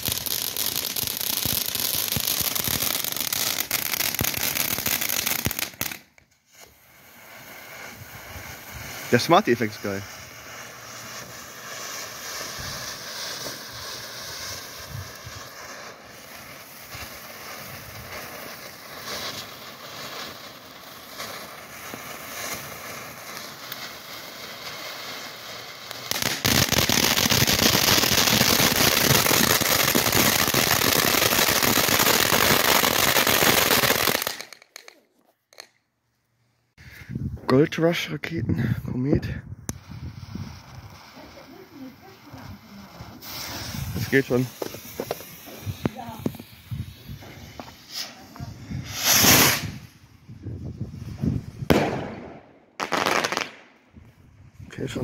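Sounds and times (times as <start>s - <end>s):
fireworks fizzing and crackling: 0.0s - 36.0s, 36.7s - 55.0s.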